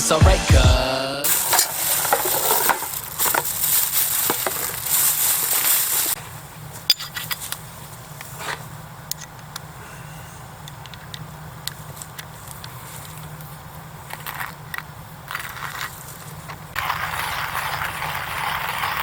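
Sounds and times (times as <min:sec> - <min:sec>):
hip-hop music: 0:00.0 - 0:01.3
small clicks and crackles: 0:14.1 - 0:19.0.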